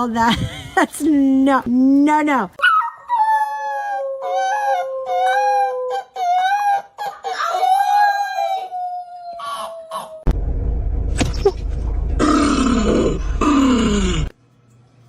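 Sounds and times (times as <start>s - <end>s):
dog whining and howling: 2.6s - 10.3s.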